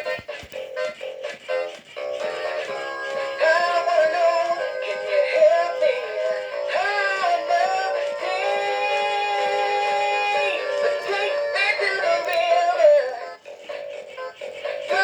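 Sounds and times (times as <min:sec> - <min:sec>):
man singing over music: 0:05.2 - 0:13.3.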